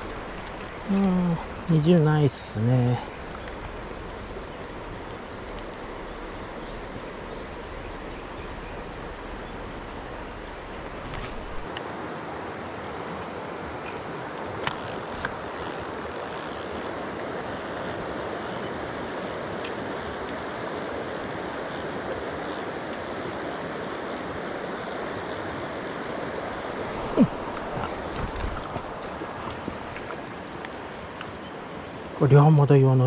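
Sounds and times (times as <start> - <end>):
stream rushing over rocks: 0.0 - 8.2, 18.8 - 33.0.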